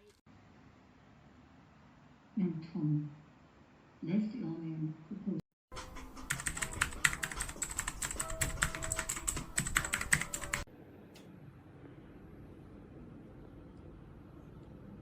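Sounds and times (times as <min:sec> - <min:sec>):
fast mechanical keyboard typing: 0:06.2 - 0:10.7.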